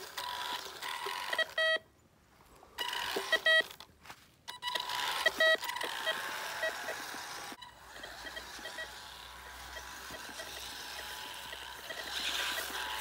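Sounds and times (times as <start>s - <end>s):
buzzer short beeps: 1.0s - 1.8s, 2.8s - 3.7s, 4.5s - 7.0s, 7.6s - 9.0s
small electric motor running: 4.8s - 13.0s.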